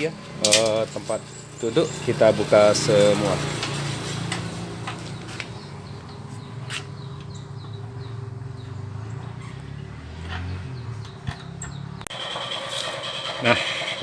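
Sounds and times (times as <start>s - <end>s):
small bird chirping: 1.0s - 2.2s, 4.5s - 9.8s, 10.4s - 12.1s.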